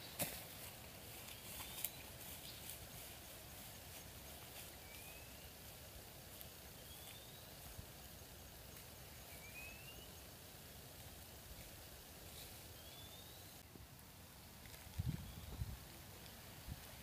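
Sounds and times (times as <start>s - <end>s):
faint outdoor ambience: 0.0s - 17.0s
small bird chirping: 6.8s - 7.5s, 12.7s - 13.6s.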